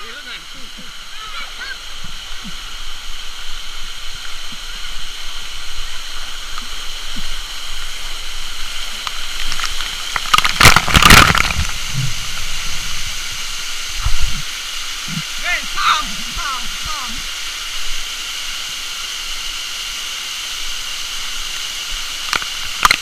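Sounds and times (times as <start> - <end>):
waterfall rushing: 0.0 - 23.0
harsh burst of noise: 8.3 - 23.0.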